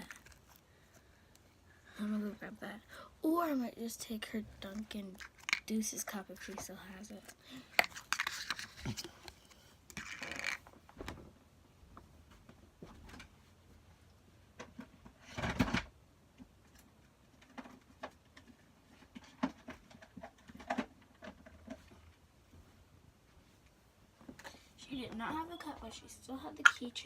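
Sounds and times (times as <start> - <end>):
objects being handled: 0.0 - 1.5, 4.6 - 11.3.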